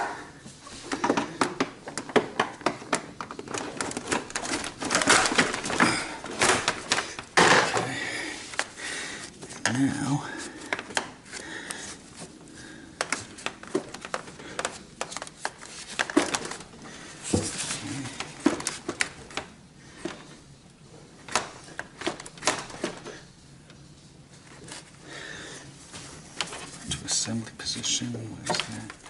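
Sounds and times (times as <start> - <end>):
hands clicking plastic parts: 0.9 - 9.8, 10.6 - 12.3, 12.9 - 20.3, 21.2 - 23.2.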